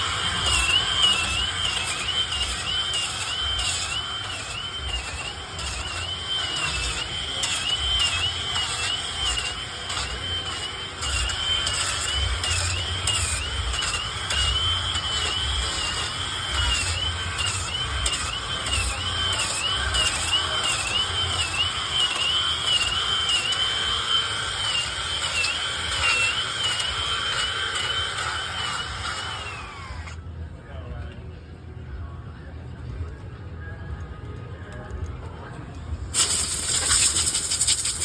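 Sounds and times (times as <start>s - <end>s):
power tool carving wood: 0.0s - 30.2s, 36.2s - 38.0s.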